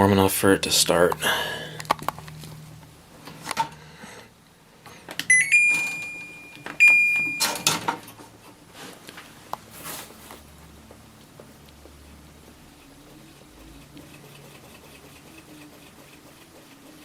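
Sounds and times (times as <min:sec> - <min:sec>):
air conditioner control beeps: 0:05.2 - 0:07.9.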